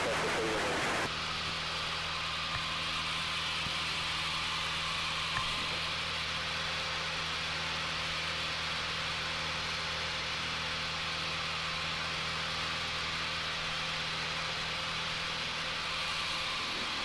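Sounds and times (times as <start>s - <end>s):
airplane engine cabin drone: 0.0s - 1.1s, 16.0s - 17.0s.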